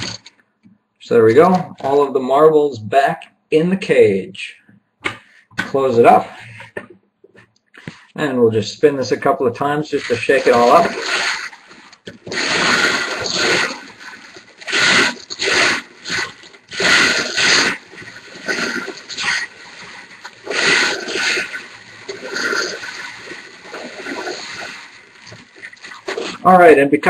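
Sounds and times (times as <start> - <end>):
marbles rattling in spinning cage: 10.0 - 26.4.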